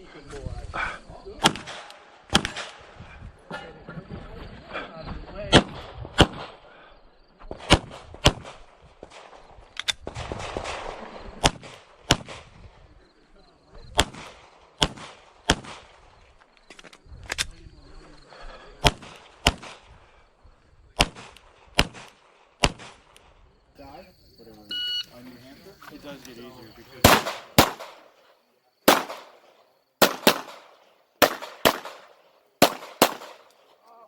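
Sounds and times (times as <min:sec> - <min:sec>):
pistol shots: 0:01.4 - 0:02.9, 0:05.5 - 0:06.6, 0:10.0 - 0:12.5, 0:14.0 - 0:16.0, 0:18.8 - 0:19.8, 0:21.0 - 0:23.2, 0:27.0 - 0:28.3, 0:28.9 - 0:33.8.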